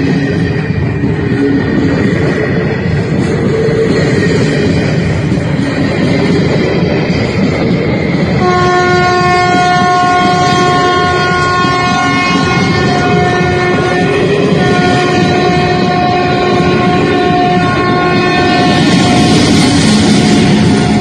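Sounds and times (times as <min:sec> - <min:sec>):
train rumbling and clattering: 0:00.0 - 0:21.0
locomotive horn blast: 0:08.4 - 0:19.3.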